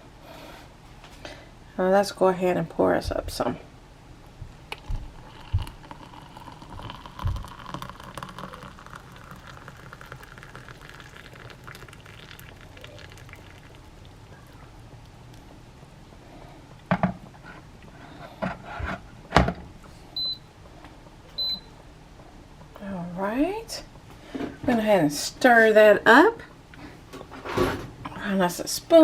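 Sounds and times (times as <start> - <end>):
water pouring into a mug: 5.1 - 14.3.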